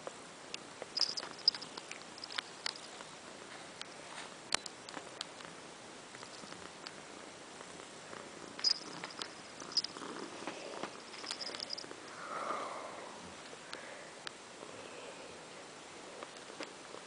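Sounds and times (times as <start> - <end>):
kitten purring: 1.0 - 3.0, 5.4 - 13.1.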